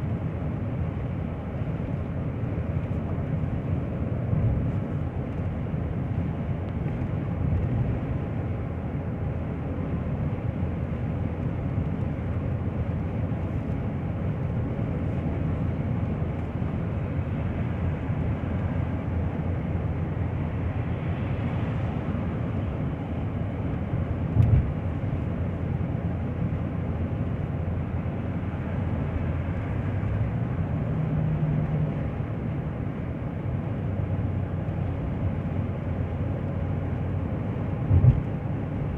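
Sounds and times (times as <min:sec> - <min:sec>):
car engine: 0:00.0 - 0:38.9
road noise: 0:00.0 - 0:38.9
sharp thump: 0:37.9 - 0:38.3.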